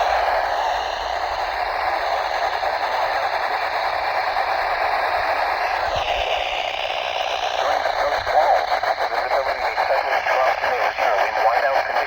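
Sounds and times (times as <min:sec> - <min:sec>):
radio static hiss: 0:05.6 - 0:12.0.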